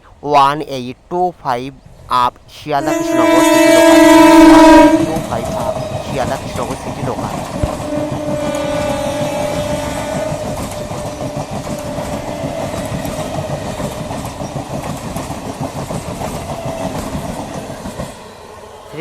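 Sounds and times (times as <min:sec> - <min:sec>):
train motor tone: 0:02.8 - 0:14.7
train wheels clattering: 0:02.9 - 0:19.0.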